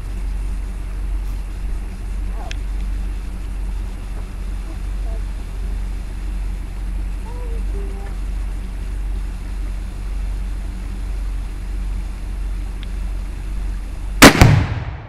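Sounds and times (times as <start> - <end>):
low rumble: 0.0 - 15.0
explosive target detonating: 14.2 - 15.0
rifle shot: 14.2 - 15.0.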